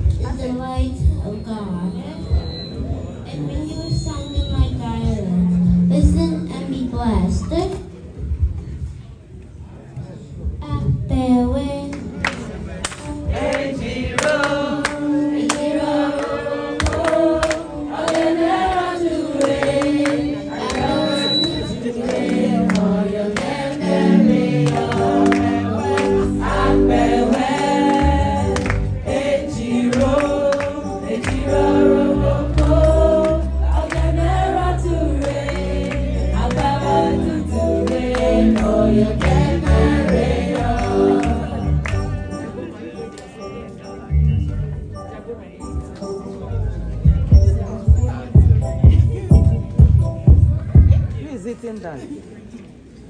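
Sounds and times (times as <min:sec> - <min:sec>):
deep bass: 0:04.0 - 0:07.6, 0:24.7 - 0:30.4, 0:31.2 - 0:42.3, 0:46.6 - 0:51.2
group singing gospel song: 0:13.1 - 0:42.4
instrumental backing with beat: 0:13.1 - 0:51.2.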